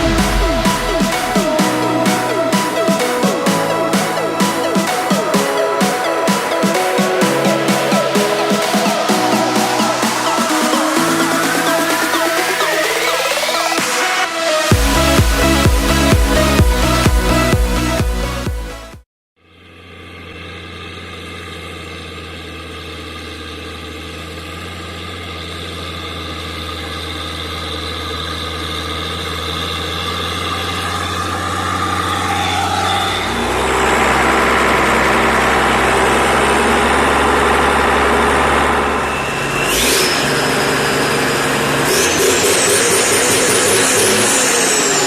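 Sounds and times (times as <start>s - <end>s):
tractor diesel engine revving: 0.0s - 13.4s, 19.7s - 45.0s.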